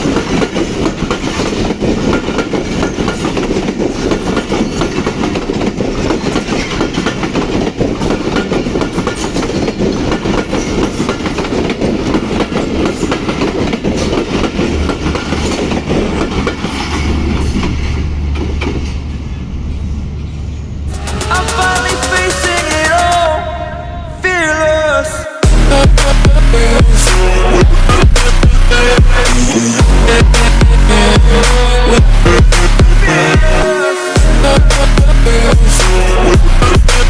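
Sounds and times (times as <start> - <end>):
train wheels clattering on rails: 0.0 - 23.3
train rumble: 0.0 - 37.0.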